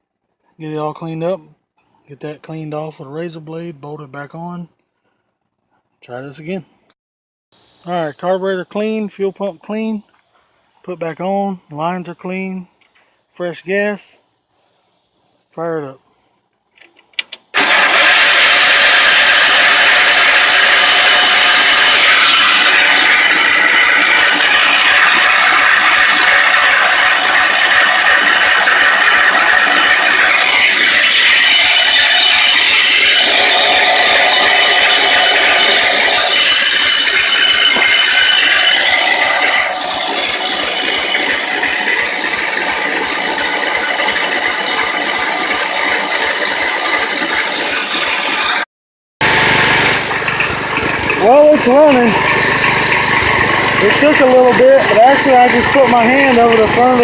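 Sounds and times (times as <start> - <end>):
garden tractor engine rattling: 16.7 - 48.5, 49.2 - 57.0.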